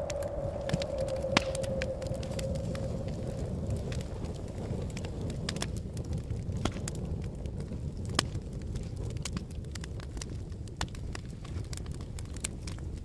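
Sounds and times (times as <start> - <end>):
low rumble of wind: 0.0 - 13.0
wood fire crackling: 0.0 - 13.0.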